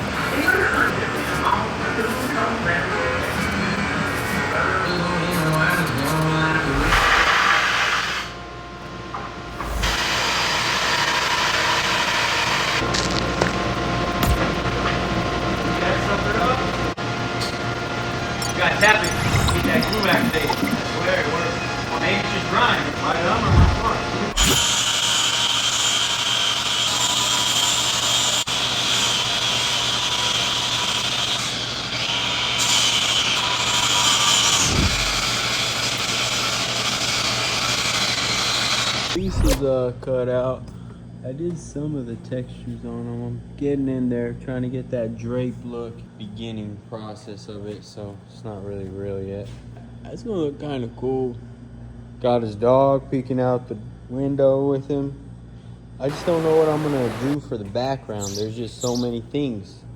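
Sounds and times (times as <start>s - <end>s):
power tool running on wood: 0.0s - 8.3s, 9.6s - 13.5s, 22.1s - 39.5s, 56.1s - 57.4s.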